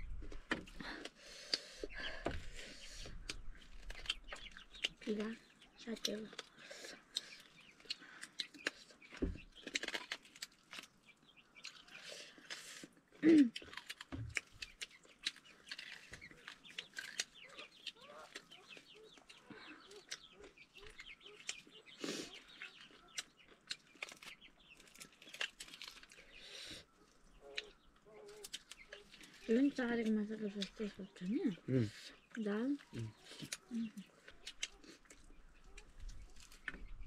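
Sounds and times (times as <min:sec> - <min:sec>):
chickens clucking: 0:14.4 - 0:23.8.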